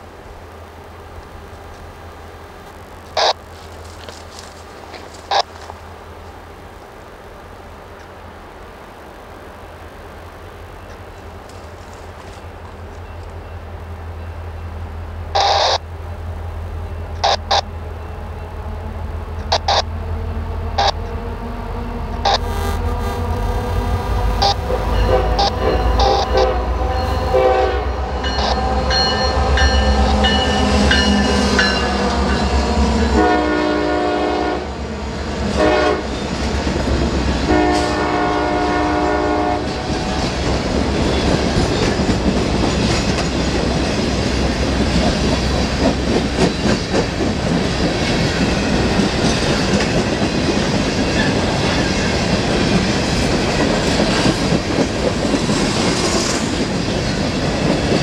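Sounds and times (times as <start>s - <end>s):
locomotive engines rumbling: 0.0s - 58.0s
train air horn: 22.3s - 34.8s, 35.5s - 36.1s, 37.5s - 39.9s
train wheels clicking over rails: 39.6s - 58.0s.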